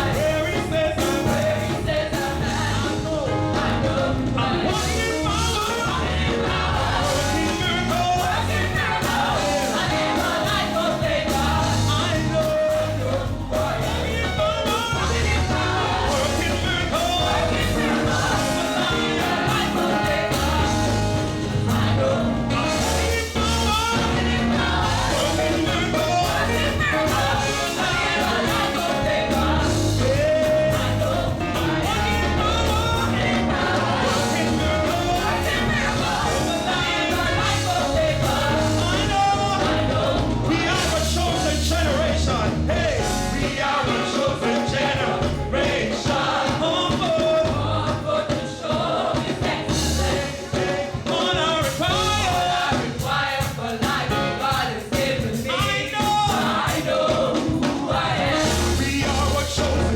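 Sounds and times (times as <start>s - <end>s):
band with bass and drums: 0.0s - 59.9s
gospel singers: 0.0s - 59.9s.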